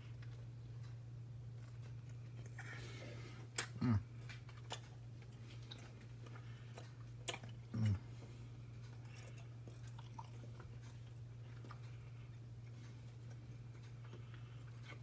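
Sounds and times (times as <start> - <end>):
man chewing food: 0.0 - 15.0
steady low hum: 0.0 - 15.0
man humming mm: 3.6 - 4.2, 7.7 - 8.1.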